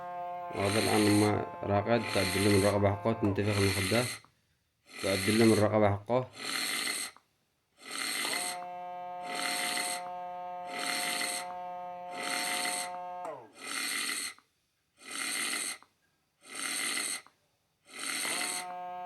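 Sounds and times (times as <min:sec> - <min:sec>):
small air pump humming: 0:00.0 - 0:04.2, 0:08.2 - 0:13.5, 0:18.2 - 0:19.0
snore-like noise: 0:00.0 - 0:04.3, 0:04.9 - 0:07.2, 0:07.8 - 0:14.4, 0:15.0 - 0:19.0.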